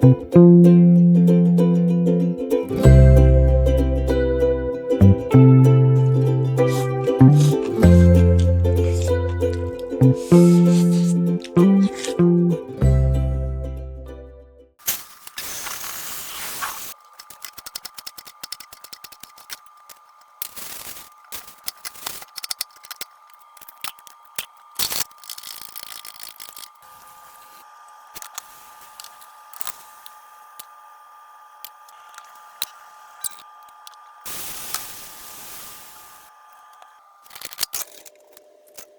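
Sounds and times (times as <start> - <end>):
rapid small clicks: 17.0 - 26.8.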